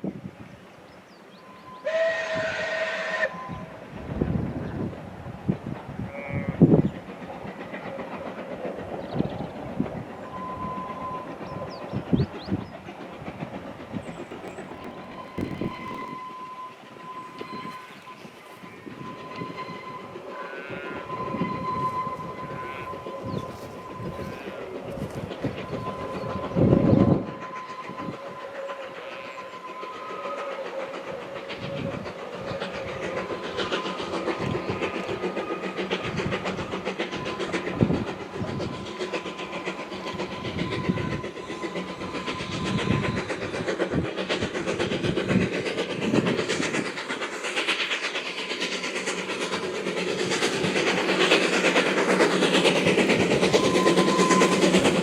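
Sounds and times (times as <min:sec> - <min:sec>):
steam locomotive exhaust: 0:00.2 - 0:55.0
rail clatter: 0:12.5 - 0:16.2, 0:31.1 - 0:55.0.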